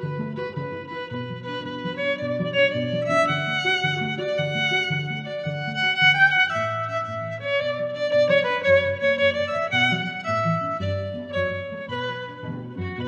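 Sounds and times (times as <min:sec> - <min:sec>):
low string accompaniment: 0:00.0 - 0:13.0
violin melody: 0:00.0 - 0:13.0.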